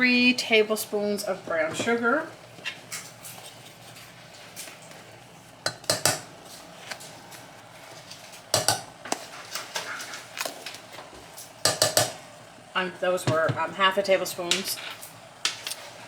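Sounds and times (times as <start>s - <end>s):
spoon tapping against pot: 5.7s - 6.2s, 8.5s - 8.9s, 11.6s - 12.2s.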